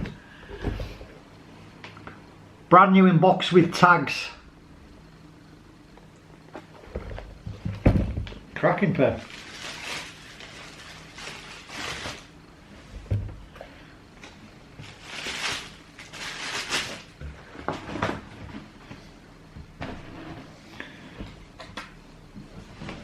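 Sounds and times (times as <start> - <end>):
cardboard and paper rustling: 9.1 - 12.4, 14.8 - 18.2.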